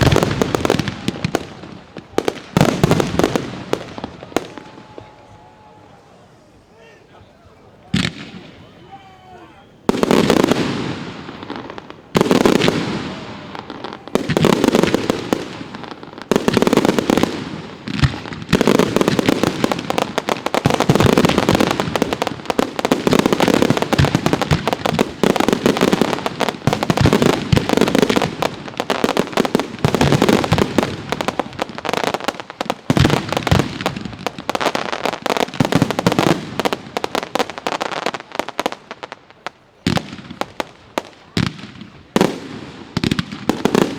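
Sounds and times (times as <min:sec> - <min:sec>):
fireworks crackling: 0:00.0 - 0:43.9.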